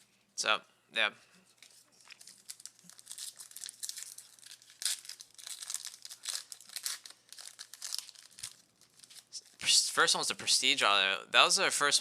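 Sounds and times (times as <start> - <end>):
foil wrappers crinkling and tearing: 1.6 - 9.5.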